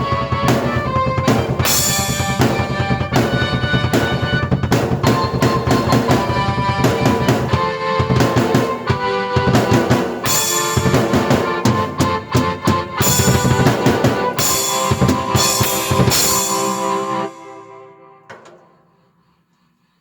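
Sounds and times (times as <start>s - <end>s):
drum beat: 0.0s - 17.3s
keyboard chords: 0.0s - 19.2s
cymbal crashes: 1.6s - 3.4s, 13.0s - 17.7s.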